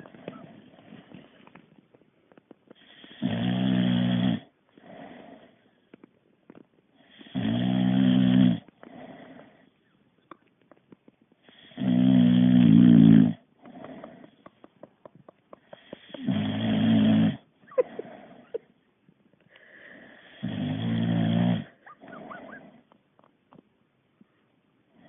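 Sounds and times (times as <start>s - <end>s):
dog snoring: 2.7s - 5.8s, 7.0s - 9.8s, 11.4s - 14.6s, 15.6s - 18.6s, 19.9s - 22.9s.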